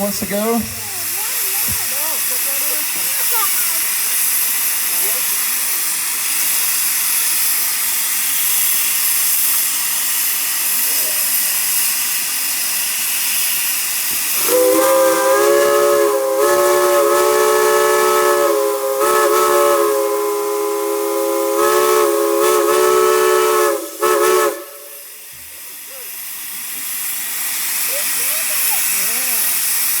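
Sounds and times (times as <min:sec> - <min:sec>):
steam hissing: 0:00.0 - 0:30.0
chime steam whistle: 0:14.4 - 0:25.3.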